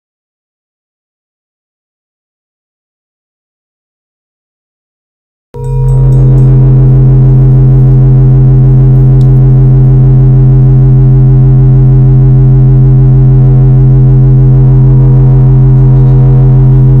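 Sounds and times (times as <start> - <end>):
low synthesizer drone: 5.6 - 17.0.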